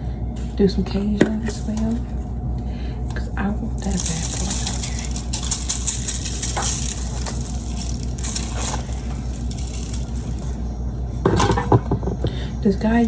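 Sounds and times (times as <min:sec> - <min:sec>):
steady low hum: 0:00.0 - 0:13.0
seasoning containers rattling: 0:03.6 - 0:10.6, 0:11.2 - 0:12.1.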